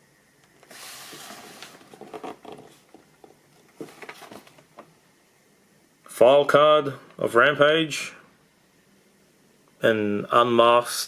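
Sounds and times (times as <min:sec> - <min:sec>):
cardboard box rustling scrape: 0:00.6 - 0:03.0, 0:03.6 - 0:04.6.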